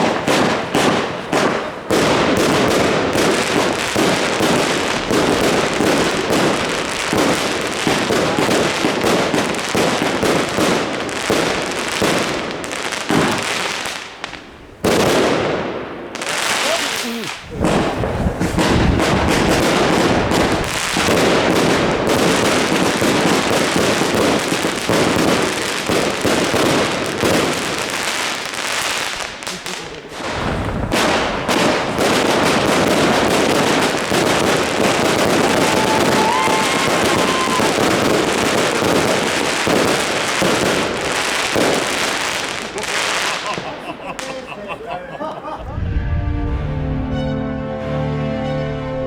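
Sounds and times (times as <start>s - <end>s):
firework crackling and bangs: 0.0s - 44.3s.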